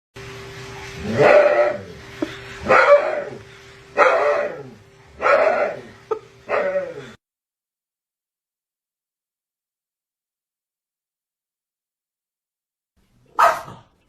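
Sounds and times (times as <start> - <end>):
dog barking: 2.6 - 3.4, 4.0 - 5.8, 13.3 - 13.9.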